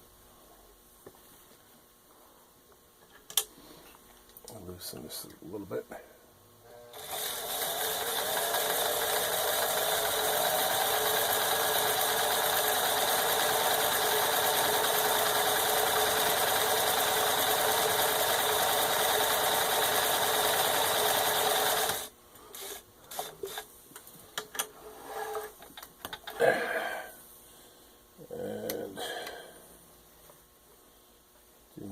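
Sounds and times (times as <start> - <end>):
sewing machine running: 6.9 - 22.8.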